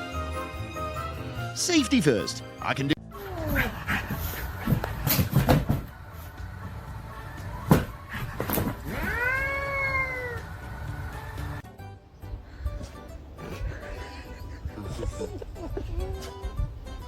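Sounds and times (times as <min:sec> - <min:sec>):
cat meowing: 0:08.8 - 0:10.5.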